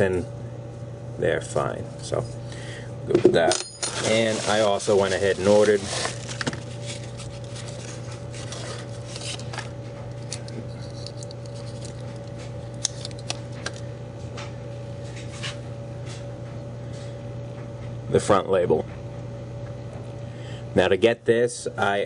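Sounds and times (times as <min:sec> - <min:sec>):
steady low hum: 0:00.0 - 0:22.0
handling clicks and scratches: 0:03.6 - 0:13.8.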